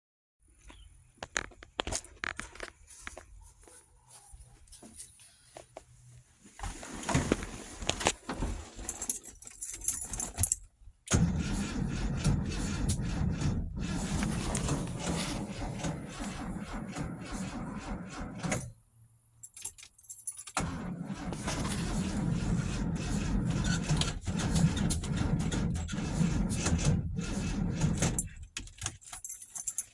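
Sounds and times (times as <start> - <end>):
keys jangling: 8.9 - 10.7, 19.4 - 20.6, 28.2 - 29.9
car starter cranking: 11.1 - 18.8, 20.5 - 28.8.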